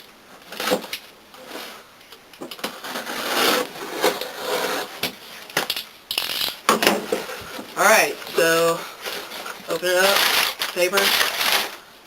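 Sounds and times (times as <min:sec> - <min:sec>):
cardboard scraping and rustling: 0:00.4 - 0:11.8.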